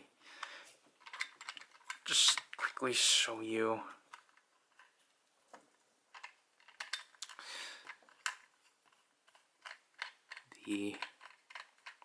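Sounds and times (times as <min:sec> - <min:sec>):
rustling: 0:00.6 - 0:12.0
plastic toy pieces clicking: 0:01.0 - 0:02.7, 0:06.1 - 0:12.0.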